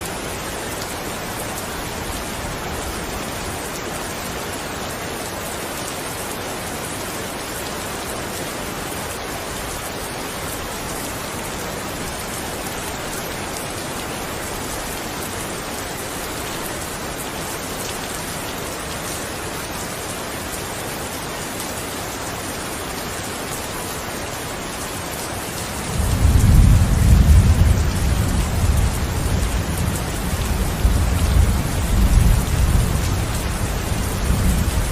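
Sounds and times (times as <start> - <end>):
heavy rain falling: 0.0 - 34.9
thunder rumbling: 25.8 - 34.9.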